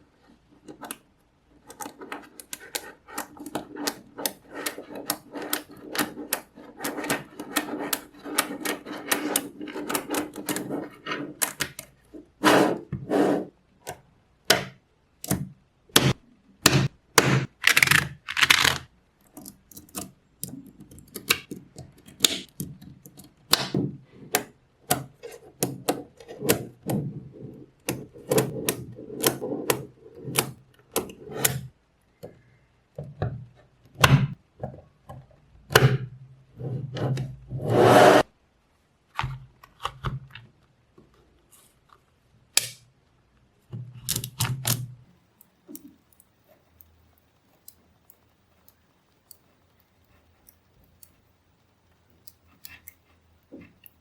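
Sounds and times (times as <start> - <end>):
balls rattling and rubbing: 0.2 - 13.6, 17.4 - 18.9, 25.1 - 31.4.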